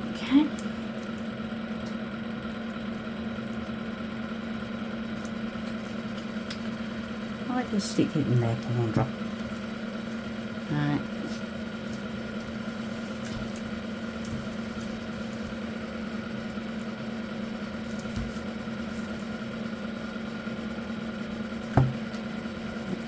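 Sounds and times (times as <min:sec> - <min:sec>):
motor humming: 0:00.0 - 0:23.0
short knock: 0:21.7 - 0:22.0.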